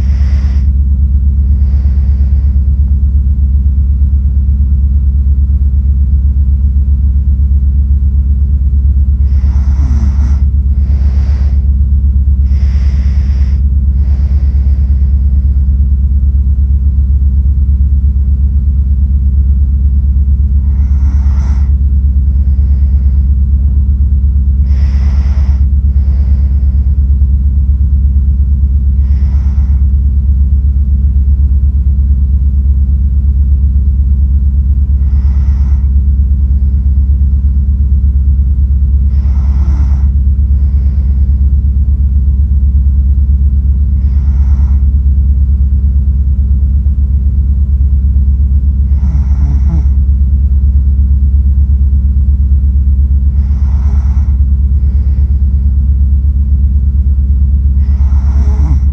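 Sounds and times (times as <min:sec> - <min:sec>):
person breathing while asleep: 0:00.0 - 0:03.5, 0:08.7 - 0:17.8, 0:20.2 - 0:32.2, 0:33.4 - 0:47.8, 0:48.7 - 0:50.2, 0:52.9 - 0:58.9
steady low rumble: 0:00.0 - 0:58.9.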